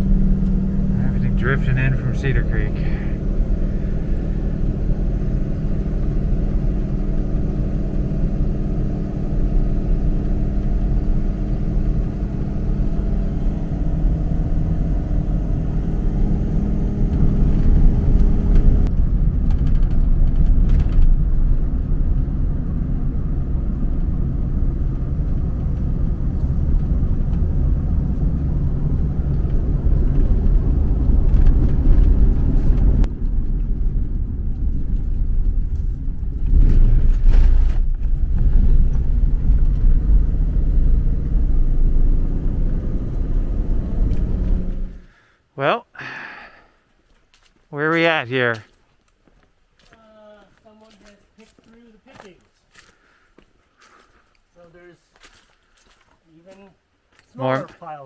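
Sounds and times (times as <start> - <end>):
engine rumble: 0.0 - 45.3
tyres rumbling on road: 0.0 - 45.3.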